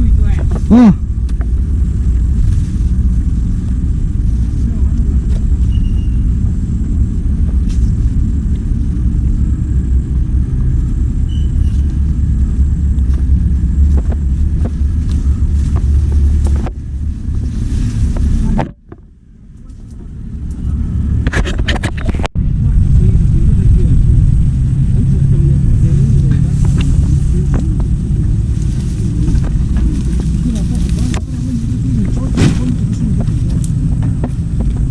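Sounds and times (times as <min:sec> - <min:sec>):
heavy engine rumbling: 0:00.0 - 0:34.9.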